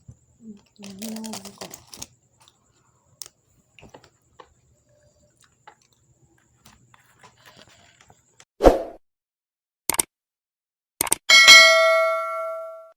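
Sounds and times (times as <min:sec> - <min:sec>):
soft eating crunches: 0:00.0 - 0:08.4.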